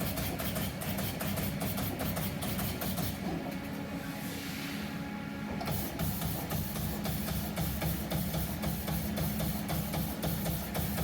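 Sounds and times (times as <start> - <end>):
steady machine hum: 0.0 - 11.0.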